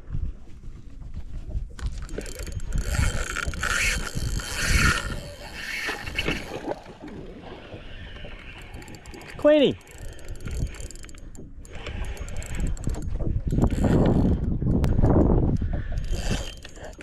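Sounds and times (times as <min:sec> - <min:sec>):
fishing reel ratcheting: 0:01.8 - 0:06.9, 0:08.1 - 0:14.5, 0:15.1 - 0:17.0.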